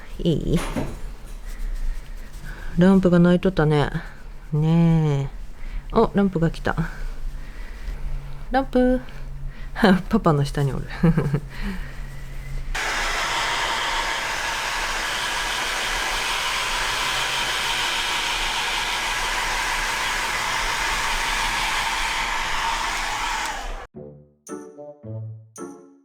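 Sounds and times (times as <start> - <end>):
hair dryer blowing: 12.8 - 23.9.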